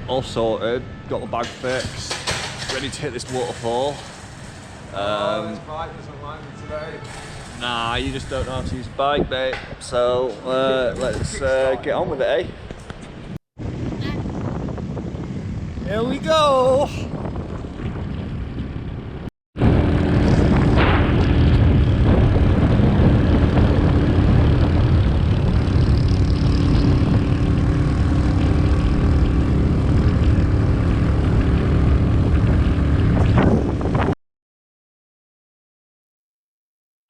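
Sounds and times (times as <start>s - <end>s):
small motorbike engine running: 7.1s - 8.7s.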